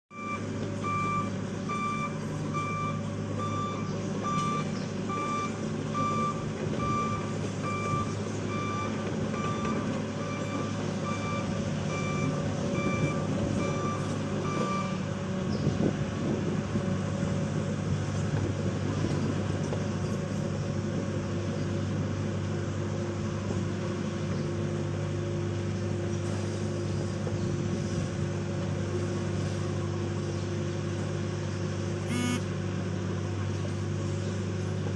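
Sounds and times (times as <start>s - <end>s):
diesel engine running: 0.1s - 34.9s
reverse alarm beeping: 32.1s - 32.5s.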